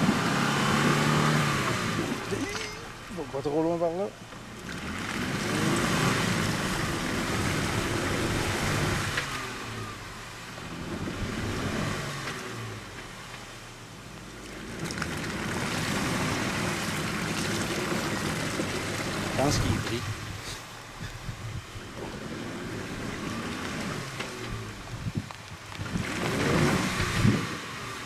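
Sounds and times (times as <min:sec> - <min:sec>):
vehicle engine running: 0:00.0 - 0:28.0.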